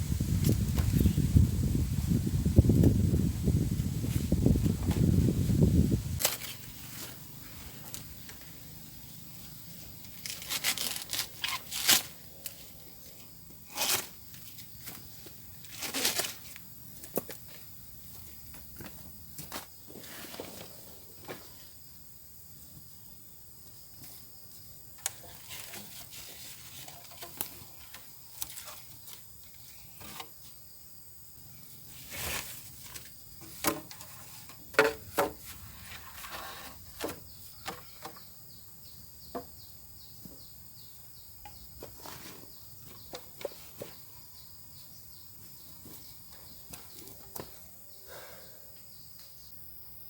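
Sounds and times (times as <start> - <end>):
insects droning: 0.0 - 50.0.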